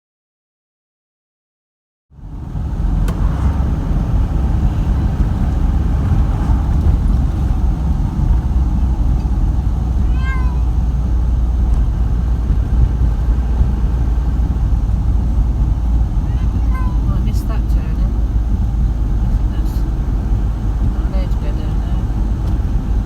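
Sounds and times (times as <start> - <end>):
vehicle rumble from inside: 2.1 - 23.0
cat meowing: 10.0 - 10.8.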